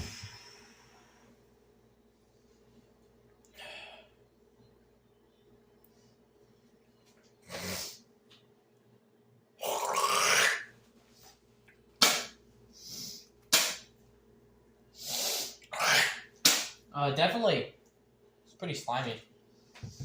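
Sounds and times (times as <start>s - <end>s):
person breathing out heavily: 3.5s - 4.2s.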